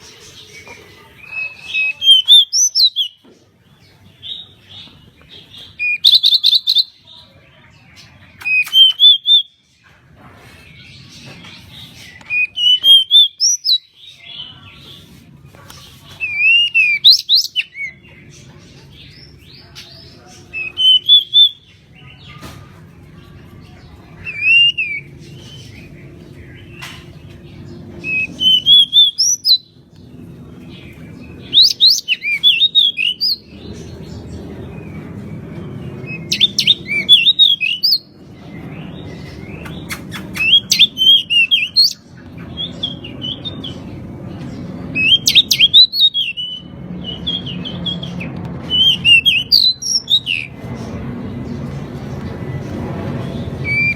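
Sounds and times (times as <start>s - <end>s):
bird singing whistled phrases: 5.8s - 6.9s, 45.0s - 48.1s.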